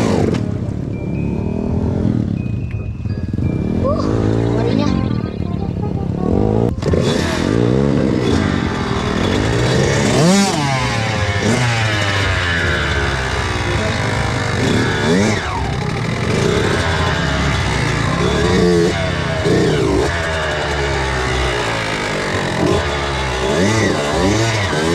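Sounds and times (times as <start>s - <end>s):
dirt bike engine revving: 0.0s - 2.6s, 3.3s - 5.4s, 6.0s - 24.9s.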